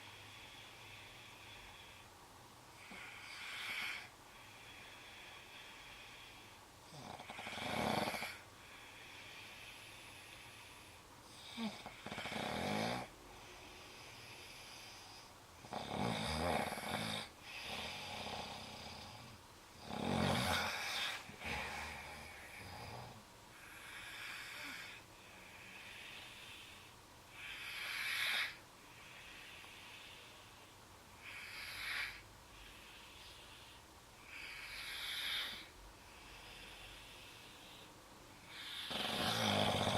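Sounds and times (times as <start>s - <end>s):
person snoring heavily: 6.9s - 8.4s, 11.4s - 13.1s, 15.6s - 25.0s, 38.4s - 39.9s.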